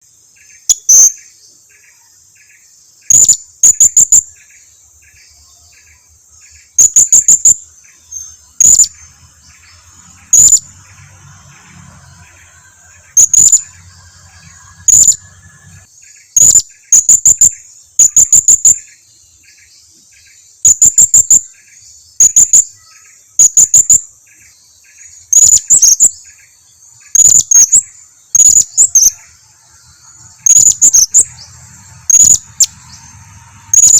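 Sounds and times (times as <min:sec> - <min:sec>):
parrot high-pitched calls: 0:13.1 - 0:15.8.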